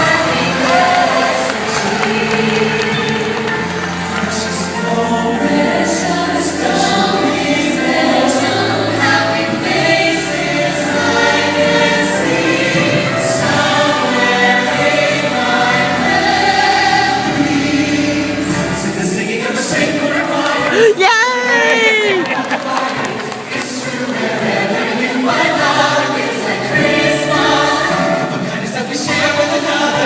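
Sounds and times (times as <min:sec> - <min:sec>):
choir singing: 0:00.0 - 0:30.0.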